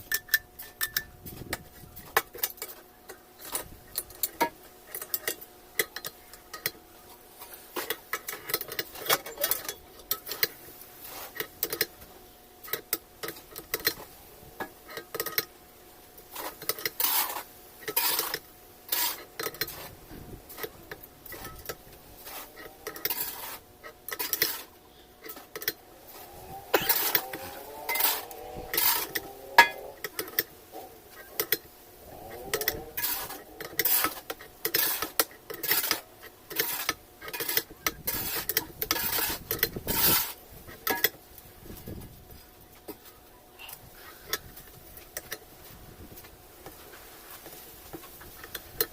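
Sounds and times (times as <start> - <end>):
metal parts clinking and knocking: 14.6 - 15.5
metal grating slides: 16.3 - 41.2.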